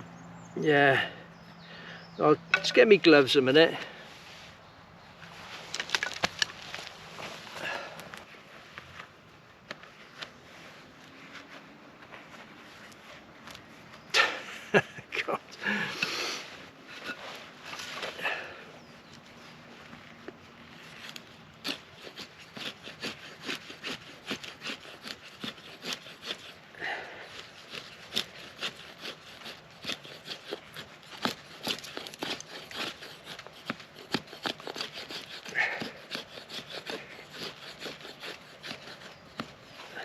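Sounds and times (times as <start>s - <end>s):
knife scraping strokes: 27.3s - 40.0s.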